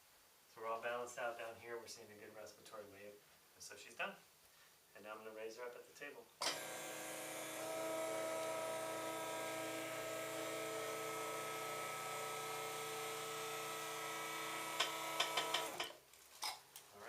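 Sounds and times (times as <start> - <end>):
electric motor running: 6.4 - 15.9.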